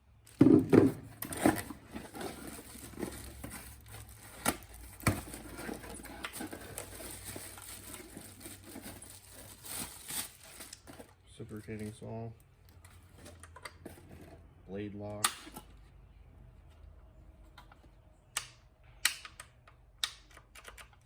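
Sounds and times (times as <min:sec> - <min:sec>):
packaging rustling and crinkling: 0:00.3 - 0:12.1.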